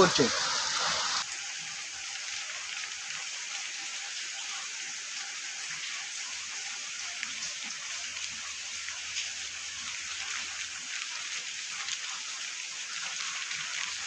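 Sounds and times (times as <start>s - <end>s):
rain falling: 0.0s - 6.0s
water dripping: 0.0s - 14.0s.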